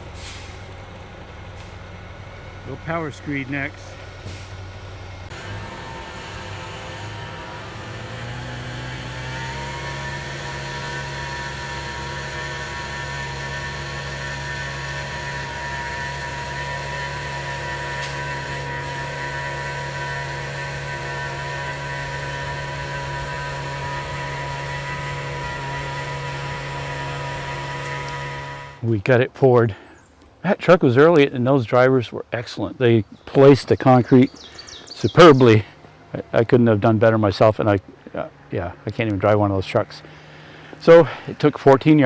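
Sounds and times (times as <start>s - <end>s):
small engine running: 1.5s - 28.8s, 37.8s - 42.0s.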